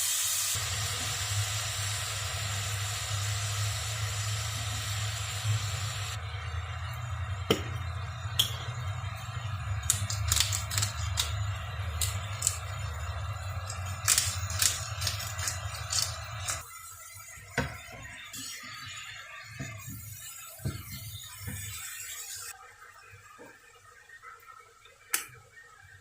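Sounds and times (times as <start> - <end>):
steady hiss: 0.0 - 6.2.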